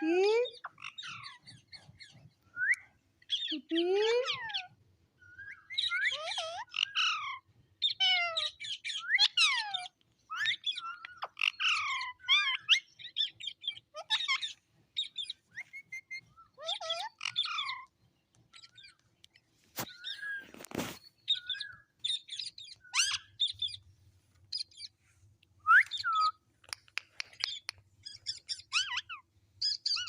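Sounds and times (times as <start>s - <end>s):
parrot squawking and chattering: 0.4s - 2.1s, 5.7s - 18.9s, 21.5s - 23.8s, 25.9s - 30.0s.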